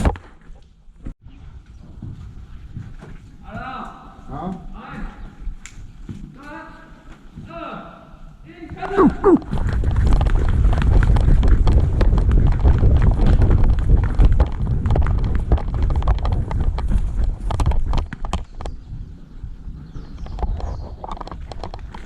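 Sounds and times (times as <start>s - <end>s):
footsteps on rough ground: 8.7s - 22.0s.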